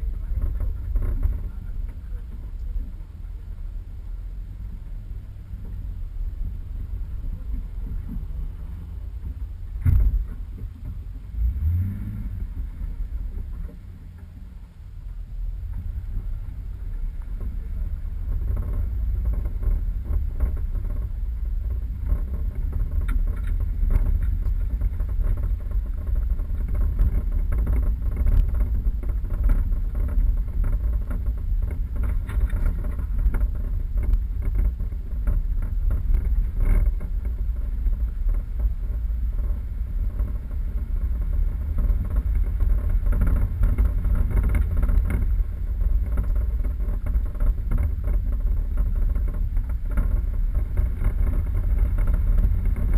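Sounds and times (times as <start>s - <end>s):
vehicle engine and tyres rumbling: 0.0s - 52.9s
knocks and rattles: 15.7s - 52.9s.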